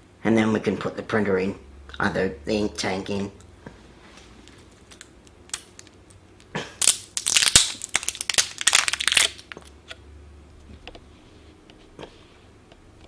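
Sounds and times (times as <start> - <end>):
plastic wrapping crinkling and tearing: 4.5 - 6.2, 6.8 - 9.7.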